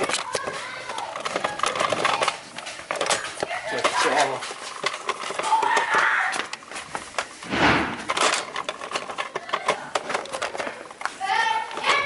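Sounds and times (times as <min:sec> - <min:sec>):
dull thud and rush: 0:07.4 - 0:08.1.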